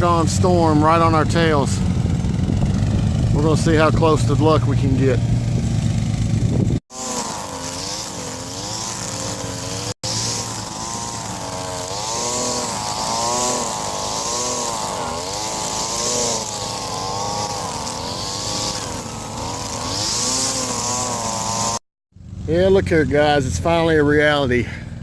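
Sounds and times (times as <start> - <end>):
lawnmower engine cutting grass: 0.0 - 25.0.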